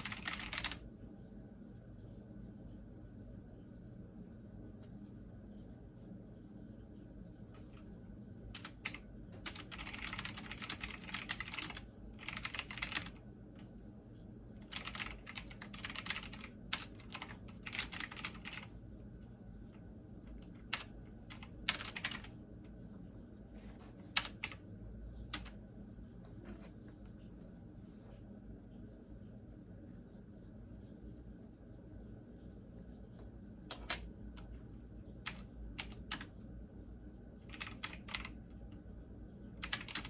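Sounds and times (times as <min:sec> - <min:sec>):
keyboard typing: 0:00.0 - 0:00.8, 0:08.6 - 0:13.2, 0:14.6 - 0:18.7, 0:20.3 - 0:22.3, 0:23.8 - 0:24.6, 0:25.2 - 0:25.6, 0:35.2 - 0:36.4, 0:37.5 - 0:38.4, 0:39.6 - 0:40.0
steady low hum: 0:00.0 - 0:40.0.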